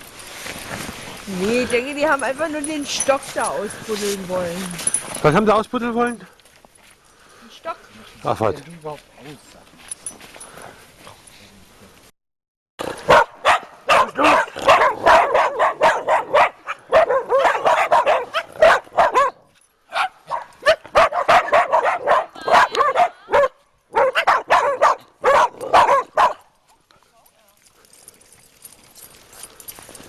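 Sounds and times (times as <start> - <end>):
dog barking and yapping: 12.9 - 26.5.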